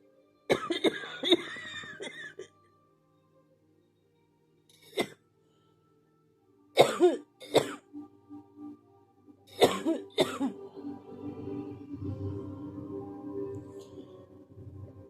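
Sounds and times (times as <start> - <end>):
person coughing: 6.8 - 7.8, 9.6 - 10.6.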